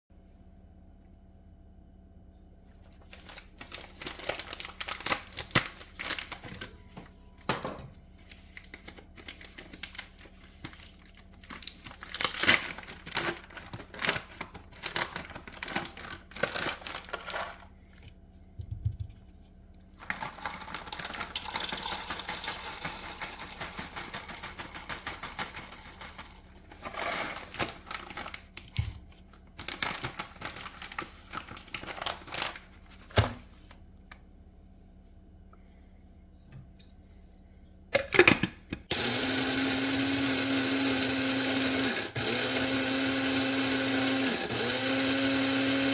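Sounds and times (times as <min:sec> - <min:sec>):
small objects clicking and clattering: 0:20.0 - 0:26.6.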